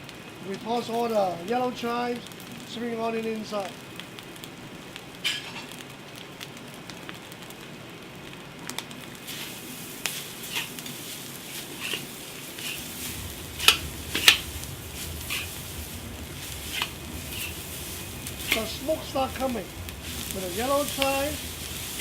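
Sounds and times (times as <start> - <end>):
noodles sizzling in a wok: 0.0 - 22.0
metal spatula scraping a wok: 9.3 - 18.7.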